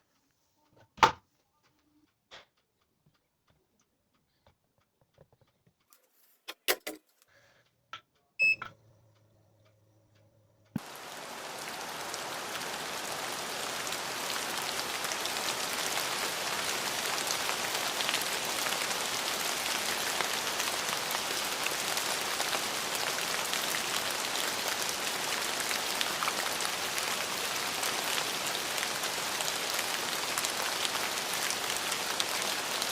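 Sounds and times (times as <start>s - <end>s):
brief beep: 8.4s - 8.7s
steady rain: 10.8s - 32.9s.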